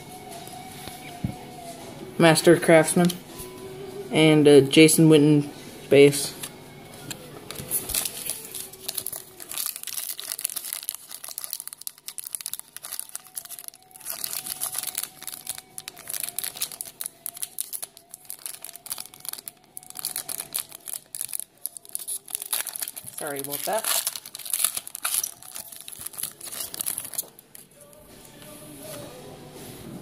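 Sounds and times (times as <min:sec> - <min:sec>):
foil wrapper crinkling and tearing: 0:07.5 - 0:27.7.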